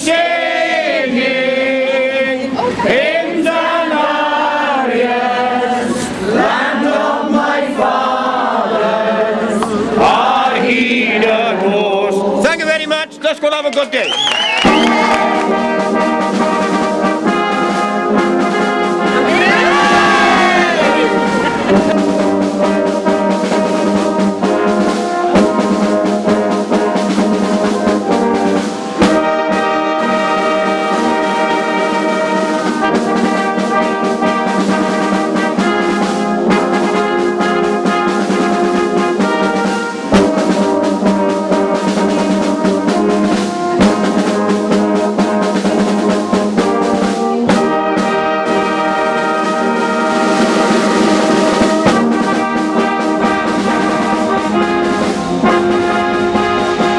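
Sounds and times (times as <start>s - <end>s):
slow brass chords: 14.7s - 56.9s.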